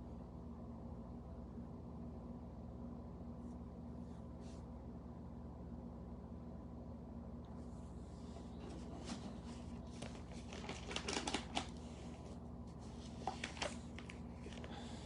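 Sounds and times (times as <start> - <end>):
steady electrical hum: 0.0 - 15.0
objects clicking and rustling: 10.0 - 11.8.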